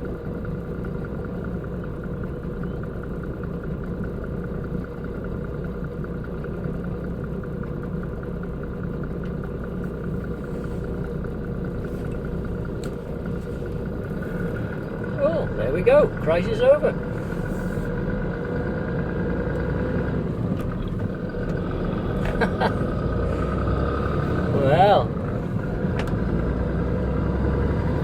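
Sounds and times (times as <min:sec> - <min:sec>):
diesel engine running at low revs: 0:00.0 - 0:28.0.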